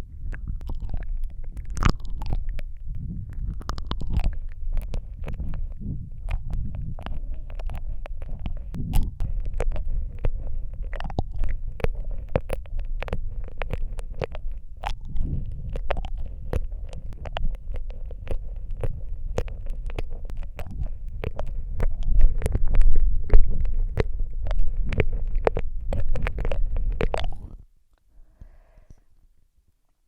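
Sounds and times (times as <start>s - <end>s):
low rumble: 0.0s - 27.7s
wet mouth clicks and smacks: 0.2s - 27.6s
faint breath: 26.7s - 29.2s.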